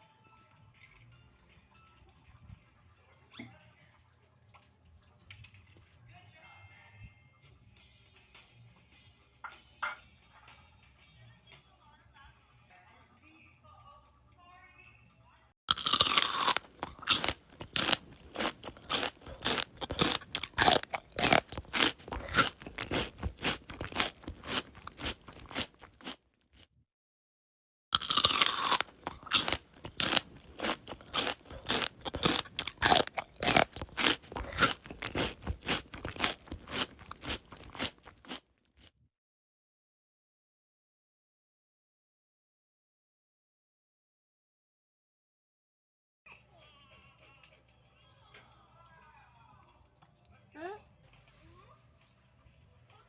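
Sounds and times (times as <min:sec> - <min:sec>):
person biting and chewing mango: 0:15.7 - 0:26.7, 0:28.0 - 0:38.9.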